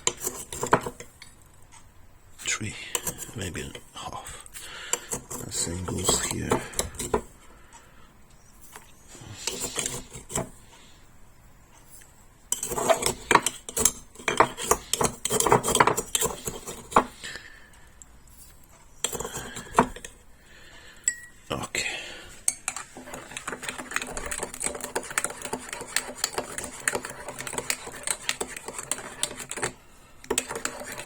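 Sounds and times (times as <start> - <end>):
teaspoon clinking against cups: 21.1 - 21.4.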